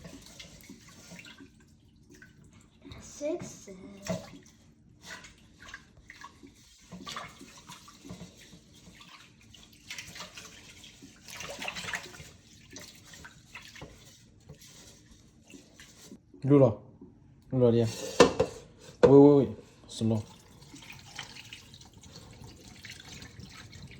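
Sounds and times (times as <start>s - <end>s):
water running in a sink: 0.0s - 16.2s, 18.1s - 23.9s.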